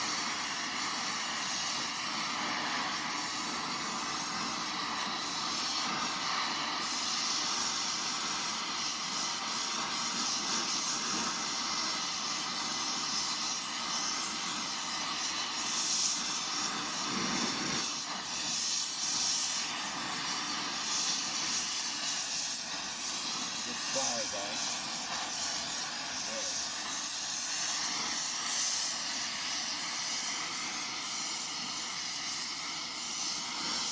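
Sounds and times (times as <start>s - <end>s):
blow torch flame hissing: 0.0s - 33.9s.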